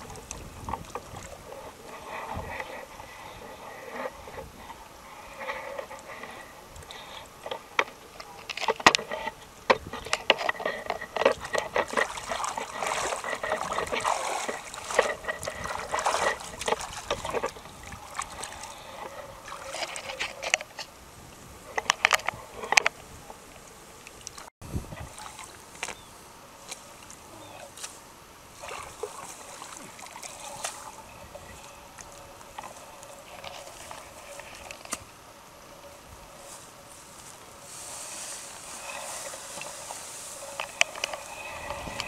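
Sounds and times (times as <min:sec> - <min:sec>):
water splashing and sloshing: 0:00.0 - 0:42.0.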